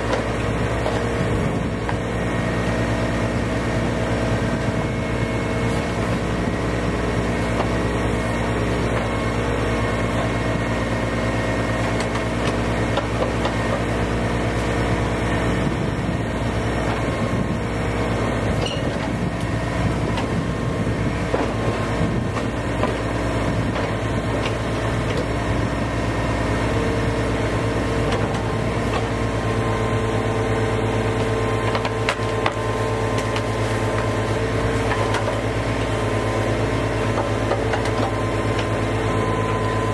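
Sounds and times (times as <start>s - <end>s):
stump grinder engine droning: 0.0s - 39.9s.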